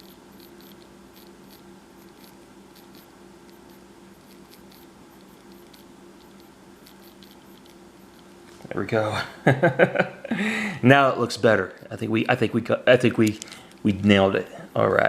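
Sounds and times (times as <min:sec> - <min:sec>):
pencil scratching on paper: 0:00.0 - 0:08.3
steady low hum: 0:00.0 - 0:15.0.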